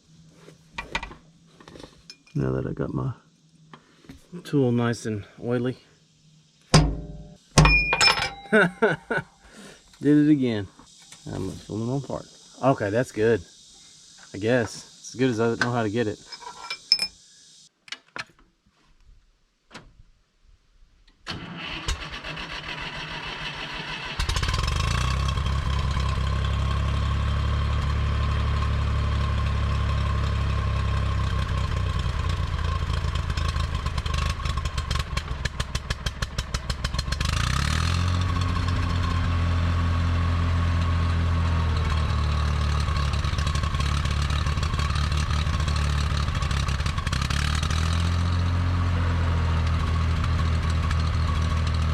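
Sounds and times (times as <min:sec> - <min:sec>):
tractor engine running: 0:06.8 - 0:09.2, 0:21.4 - 0:51.9
starter cranking engine: 0:21.3 - 0:27.0, 0:31.2 - 0:39.3, 0:41.8 - 0:48.3.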